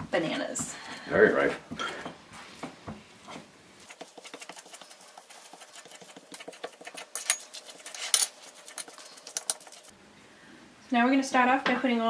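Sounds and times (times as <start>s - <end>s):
utensils tapping against bowl: 6.3s - 9.9s.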